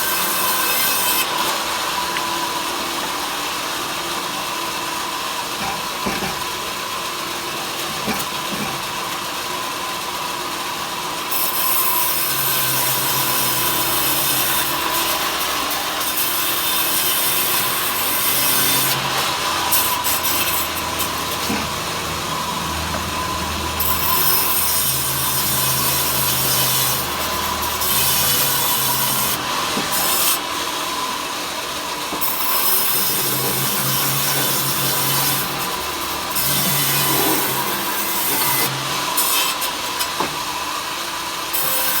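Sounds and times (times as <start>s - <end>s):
saw blade cutting wood: 0.0s - 2.3s, 5.4s - 6.8s, 7.5s - 9.2s, 11.3s - 42.0s
power saw motor hum: 12.1s - 41.4s.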